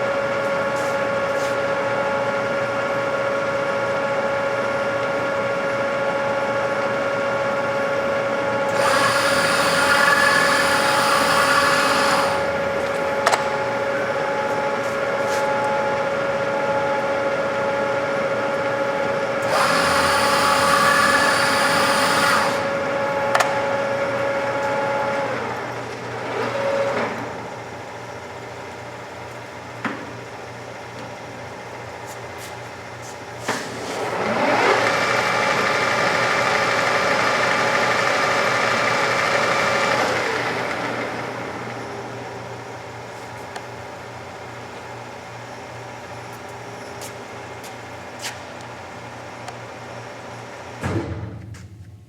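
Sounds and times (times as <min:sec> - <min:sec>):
lathe whining: 0:06.9 - 0:27.5, 0:34.0 - 0:43.4.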